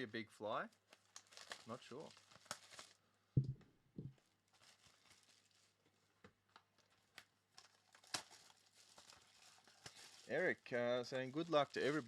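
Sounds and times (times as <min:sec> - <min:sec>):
packaging crinkling: 0:00.9 - 0:03.0, 0:04.5 - 0:06.1, 0:06.8 - 0:12.0.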